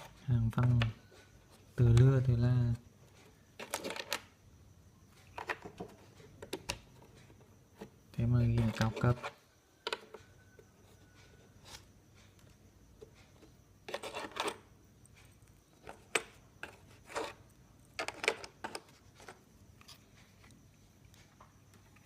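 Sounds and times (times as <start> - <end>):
small hard parts clicking and rattling: 3.1 - 4.3, 13.0 - 22.0.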